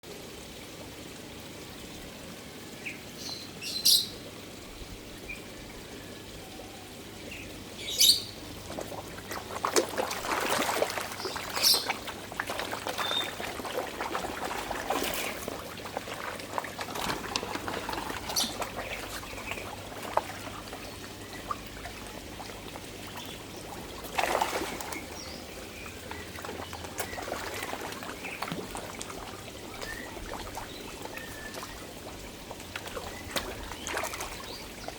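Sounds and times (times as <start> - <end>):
fish splashing at water surface: 8.5 - 34.9.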